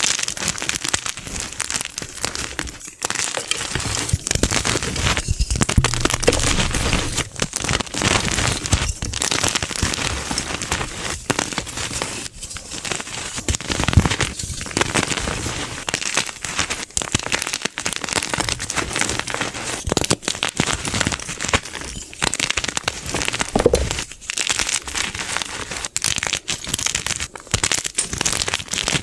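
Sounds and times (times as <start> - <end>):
chalk crunching and crumbling: 0.3 - 17.5, 18.8 - 29.0.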